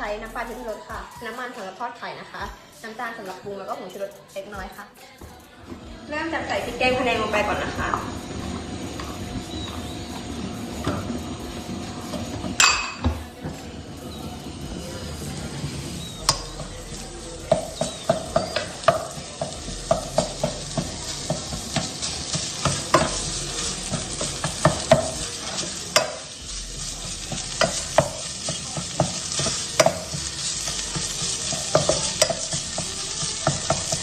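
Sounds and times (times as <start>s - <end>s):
curry paste sizzling in a pan: 6.0s - 34.0s
spatula tapping and scraping pan: 16.0s - 23.2s, 23.8s - 26.3s, 27.1s - 34.0s.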